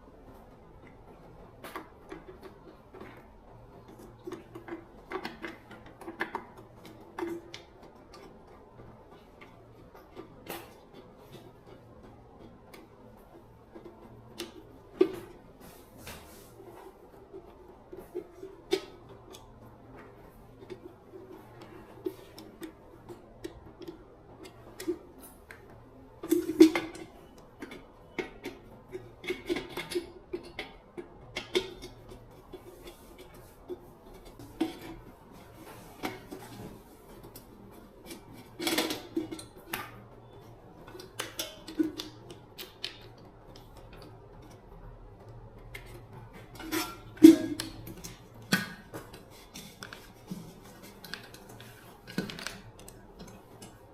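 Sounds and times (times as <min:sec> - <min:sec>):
small metal parts and tools clattering: 0:45.8 - 0:53.9.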